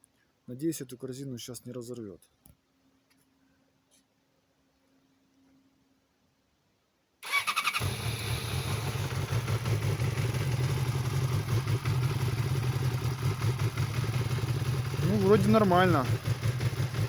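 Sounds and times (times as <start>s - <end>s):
electric starter cranking: 7.2s - 8.8s
motorcycle engine idling: 7.2s - 17.0s.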